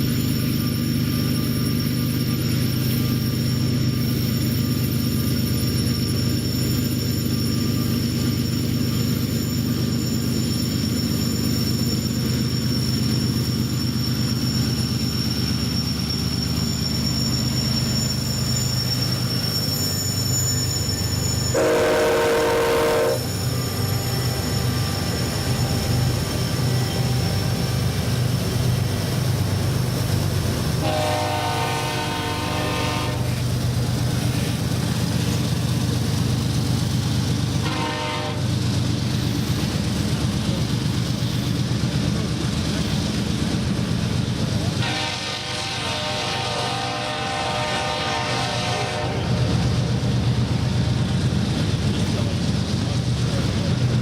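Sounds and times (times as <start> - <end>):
locomotive engine drone: 0.0 - 54.0
locomotive horn blasts: 21.5 - 23.4, 30.8 - 33.4, 37.6 - 38.4, 44.8 - 49.4.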